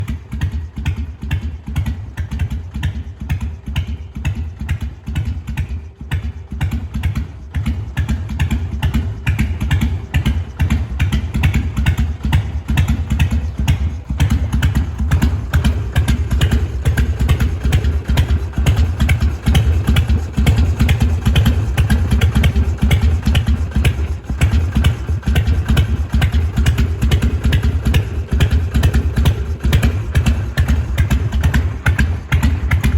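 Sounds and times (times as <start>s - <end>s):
motorcycle engine idling: 0.0s - 32.9s.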